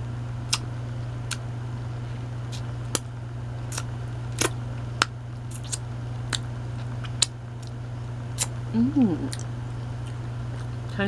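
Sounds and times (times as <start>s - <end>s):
low hum: 0.0s - 11.0s
mouth chewing clicks and smacks: 3.7s - 7.8s, 9.3s - 11.0s.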